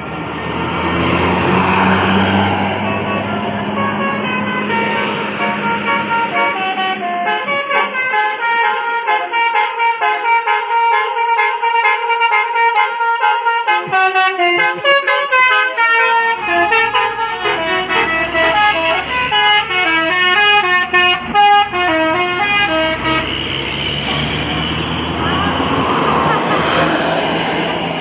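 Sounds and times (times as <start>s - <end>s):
bus horn playing melody: 1.2s - 28.0s
low engine rumble: 16.2s - 28.0s.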